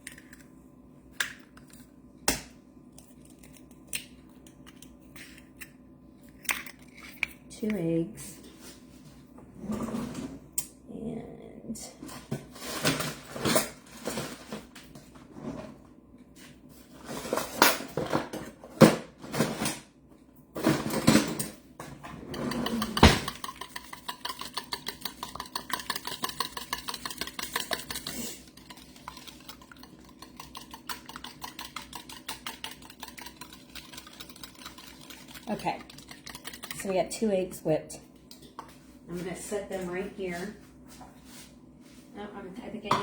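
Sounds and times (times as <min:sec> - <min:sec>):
eggs knocking against bowl: 0:22.3 - 0:36.9
whisk clicking against bowl: 0:22.3 - 0:36.9.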